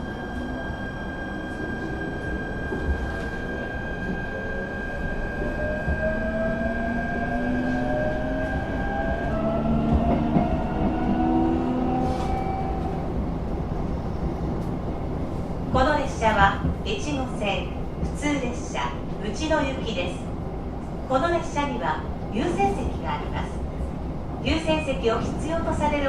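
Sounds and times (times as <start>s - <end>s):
rumble of train running gear: 0.0s - 26.0s.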